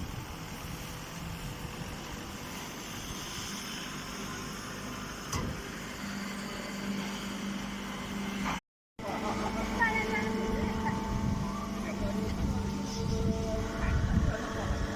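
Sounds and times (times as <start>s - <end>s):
machine humming: 3.8s - 14.9s.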